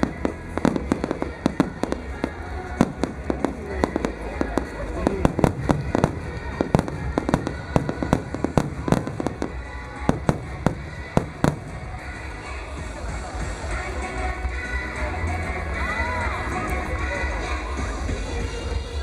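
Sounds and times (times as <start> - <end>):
fireworks bursting: 0.0 - 13.7
music playing: 0.0 - 19.0.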